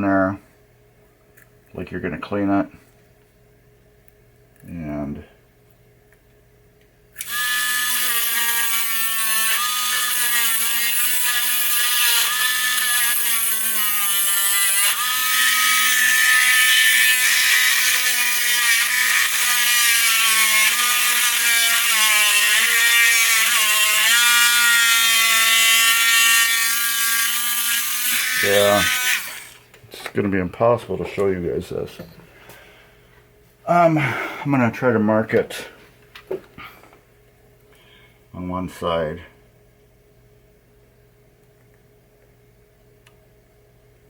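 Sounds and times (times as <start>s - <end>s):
rotary tool whining: 7.2s - 29.7s.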